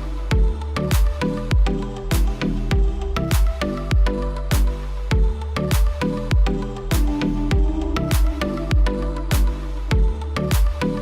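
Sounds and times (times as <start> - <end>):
electronic music with kick drum: 0.0 - 11.0.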